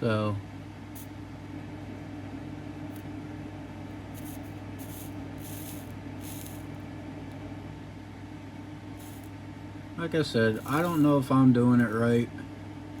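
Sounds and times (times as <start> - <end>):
low electrical hum: 0.0 - 13.0
flux sizzling: 4.2 - 6.7, 9.0 - 9.3, 10.6 - 11.2.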